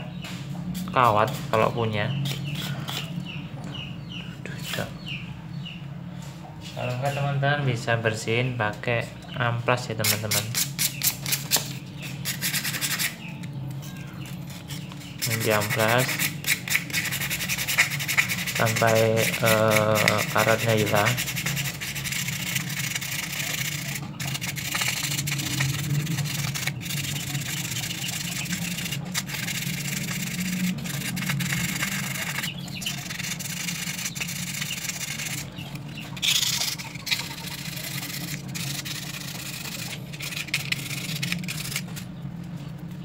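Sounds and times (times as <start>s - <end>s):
steady low hum: 0.0s - 43.0s
sandpaper scratching metal: 10.0s - 13.3s, 14.2s - 42.1s.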